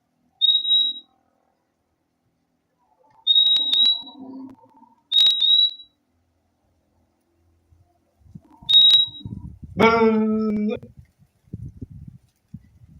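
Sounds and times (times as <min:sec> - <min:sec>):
bird double whistles: 0:00.4 - 0:01.1, 0:03.2 - 0:04.3, 0:05.1 - 0:05.9, 0:08.6 - 0:09.4.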